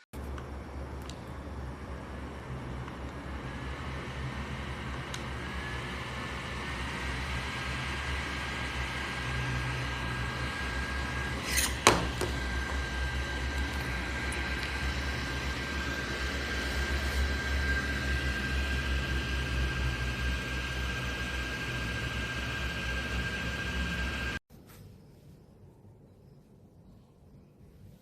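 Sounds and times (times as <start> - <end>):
neck fan whirring: 0.2 - 24.4.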